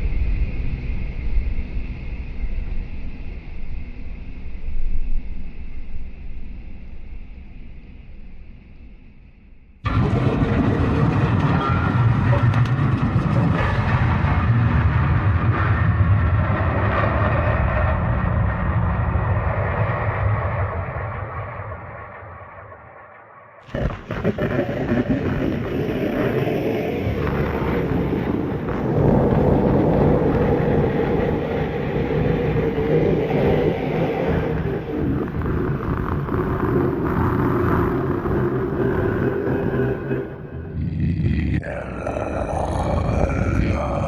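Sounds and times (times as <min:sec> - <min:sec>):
industrial rumble with grinding texture: 0:09.8 - 0:44.0.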